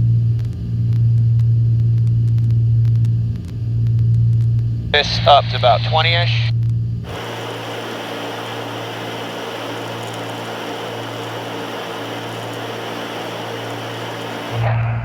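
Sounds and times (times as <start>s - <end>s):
airplane cabin engine drone: 4.9s - 15.0s.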